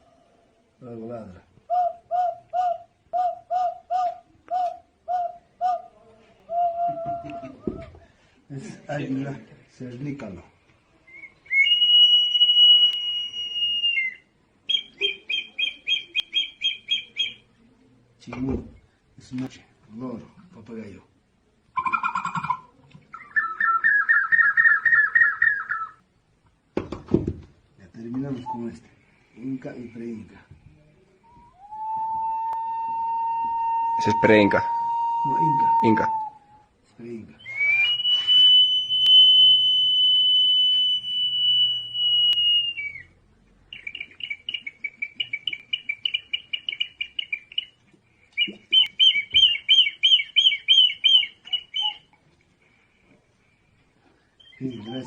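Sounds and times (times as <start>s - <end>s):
high warbling whistle: 31.3s - 36.7s, 37.4s - 43.1s.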